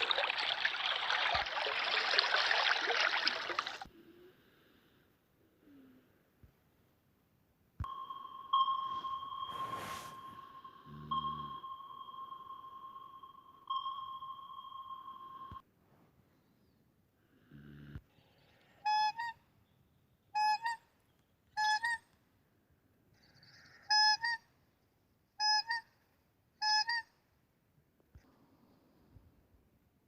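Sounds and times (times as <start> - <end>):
high electronic tone: 7.8 - 15.6.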